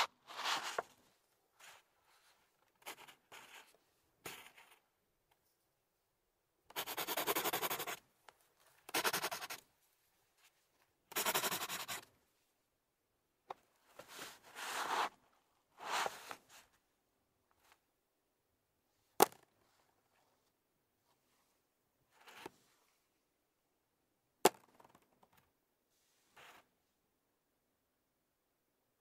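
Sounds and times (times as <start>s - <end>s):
pencil scratching on paper: 2.8s - 4.8s, 6.7s - 8.0s, 8.9s - 9.6s, 11.1s - 12.1s.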